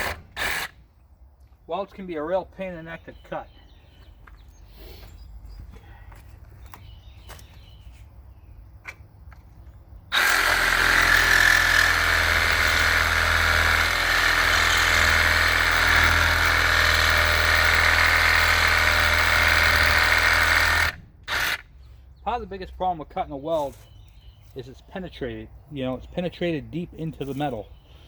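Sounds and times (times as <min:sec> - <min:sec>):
power tool cutting through metal: 0:00.0 - 0:00.7, 0:10.1 - 0:21.6.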